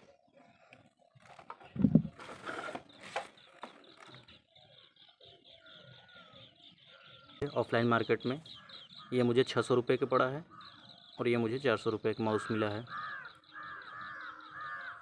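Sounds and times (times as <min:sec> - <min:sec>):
faint high-pitched chirping: 0:00.1 - 0:14.6.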